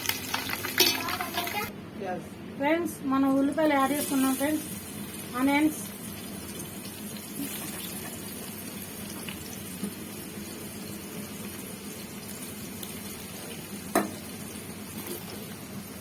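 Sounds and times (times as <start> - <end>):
onions sizzling in hot oil: 0.0 - 1.7, 3.4 - 16.0.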